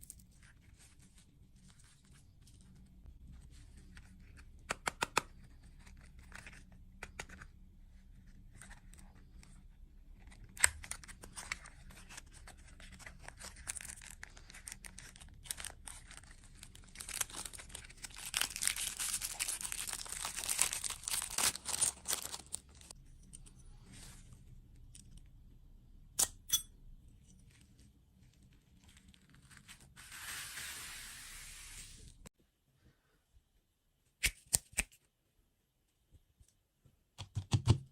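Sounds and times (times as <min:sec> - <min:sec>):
tearing and crinkling: 0:10.8 - 0:22.9.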